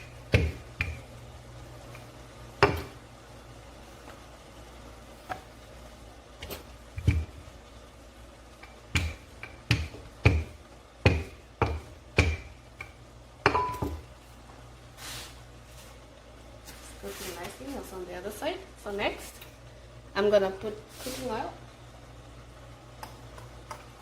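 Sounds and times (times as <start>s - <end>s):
sharp kitchen knocks: 2.6s - 2.9s, 8.9s - 12.6s.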